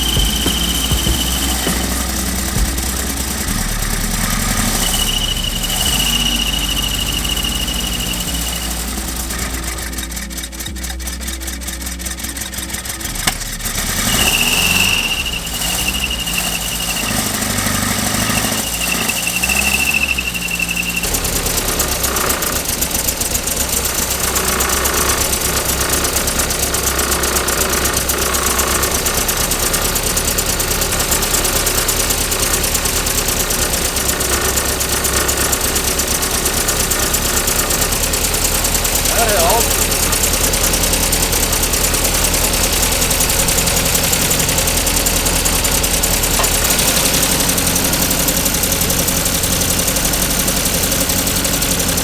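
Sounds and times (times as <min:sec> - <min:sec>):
high steady thin tone: 0:00.0 - 0:21.2
car engine idling: 0:00.0 - 0:52.0.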